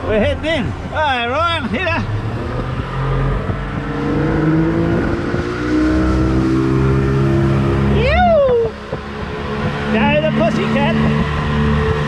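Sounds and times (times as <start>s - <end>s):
outboard motor revving: 0.0s - 12.0s.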